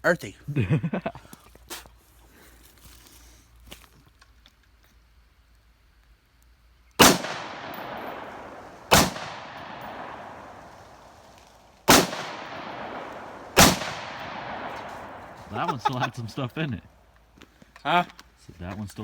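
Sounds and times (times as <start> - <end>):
gunshots with long echo: 7.0 - 16.4.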